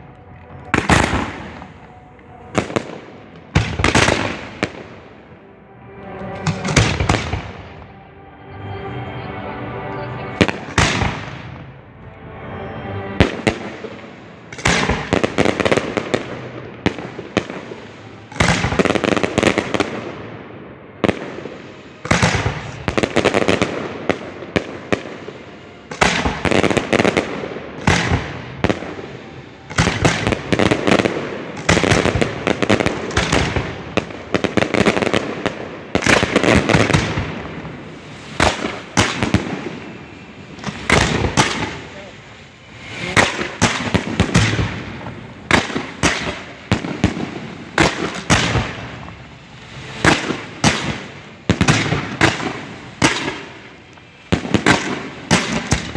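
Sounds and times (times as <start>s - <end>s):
firework mortar launches: 21.2s - 55.9s.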